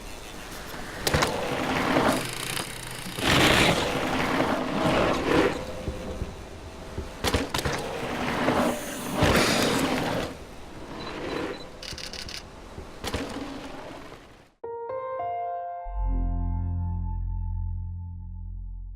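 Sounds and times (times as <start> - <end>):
bike tyres rolling and skidding: 0.0 - 14.6
quick run of clicks: 11.8 - 13.4.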